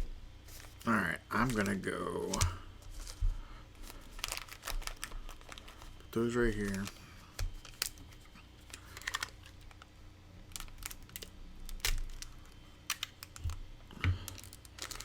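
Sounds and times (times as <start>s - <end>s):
card packs clicking on table: 1.4s - 3.1s, 6.3s - 8.0s, 8.7s - 9.8s, 10.6s - 15.0s.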